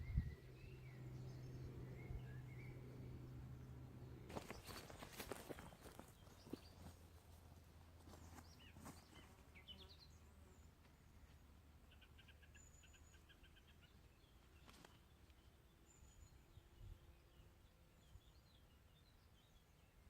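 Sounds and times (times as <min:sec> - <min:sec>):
birdsong chirps: 0:00.0 - 0:20.0.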